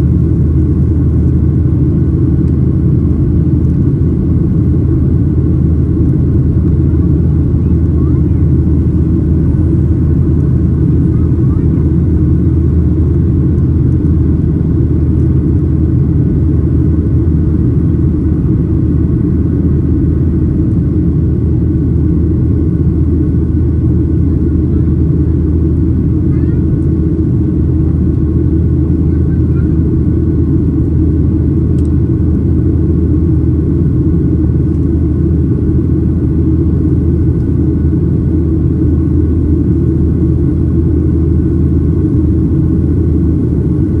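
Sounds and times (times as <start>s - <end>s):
airplane cabin rumble: 0.0s - 44.0s
faint steady whine: 0.0s - 44.0s.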